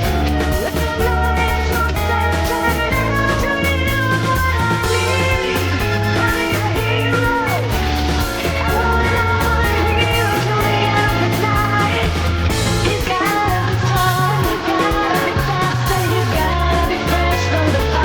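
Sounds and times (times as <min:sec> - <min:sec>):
rock music: 0:00.0 - 0:18.0.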